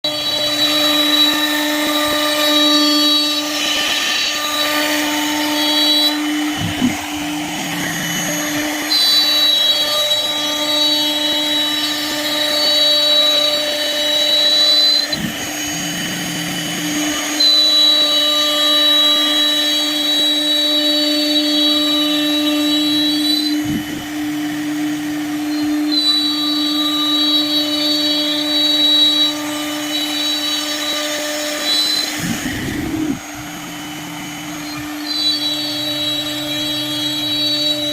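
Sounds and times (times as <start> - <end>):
high-pitched whine: 0.0 - 12.1, 13.0 - 18.4, 31.6 - 37.9
power tool motor running: 0.0 - 37.9.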